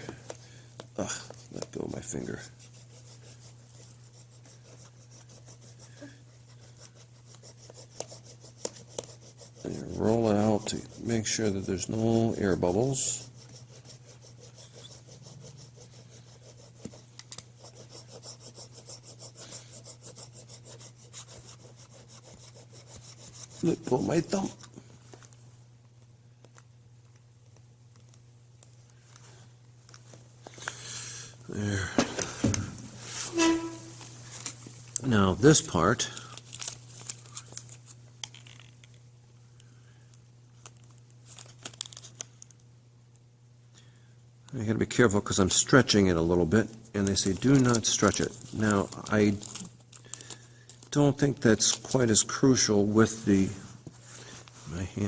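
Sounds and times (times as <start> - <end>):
steady low hum: 0.0 - 38.2
hand roller rubbing over tape: 1.0 - 24.6, 33.0 - 34.1
tape crinkling and crackling: 36.0 - 39.0, 40.5 - 42.6, 47.0 - 52.2.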